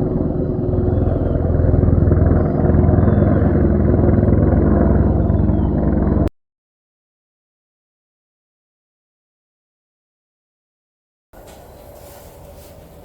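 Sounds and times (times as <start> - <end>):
diesel truck engine rumbling: 0.0 - 6.3.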